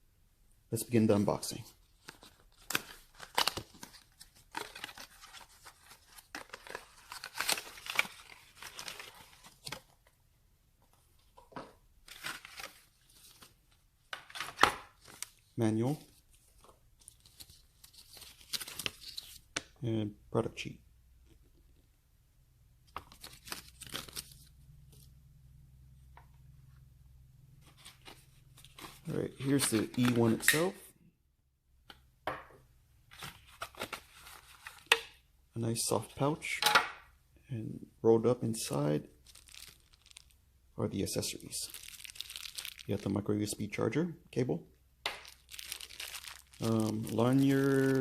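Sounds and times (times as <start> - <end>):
packaging rustling and crinkling: 1.9 - 10.0, 39.2 - 40.4, 41.6 - 43.1, 45.2 - 48.0.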